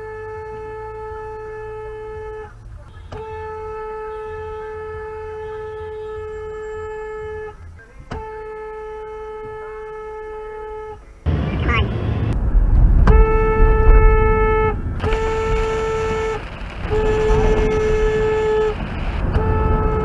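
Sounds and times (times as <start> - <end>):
car horn blasts: 0.0 - 12.4, 13.0 - 20.0
low steady rumble: 0.0 - 20.0.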